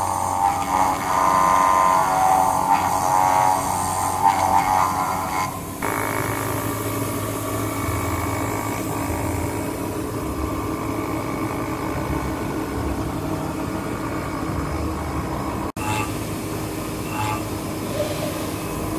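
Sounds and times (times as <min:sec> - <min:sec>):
cnc machine humming: 0:00.0 - 0:18.9.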